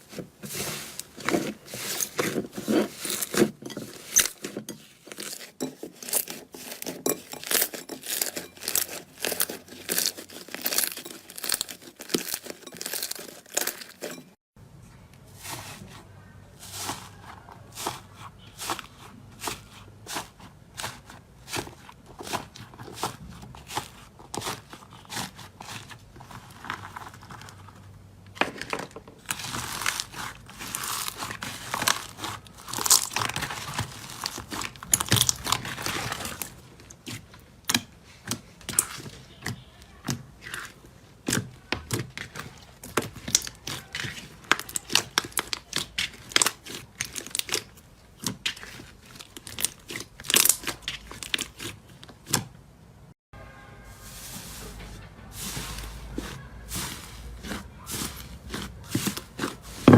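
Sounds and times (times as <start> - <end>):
slime crackling and popping: 29.3 - 37.8, 41.3 - 52.4.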